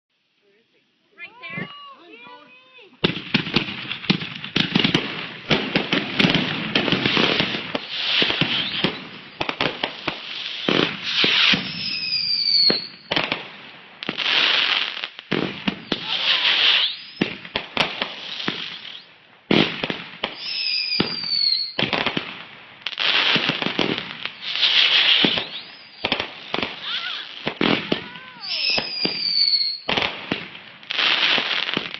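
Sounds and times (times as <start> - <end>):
fireworks crackling bangs: 3.0 - 31.9
falling firework whistle: 7.8 - 9.5, 11.0 - 13.2, 15.8 - 17.4, 18.5 - 19.1, 20.3 - 22.0, 24.4 - 30.1.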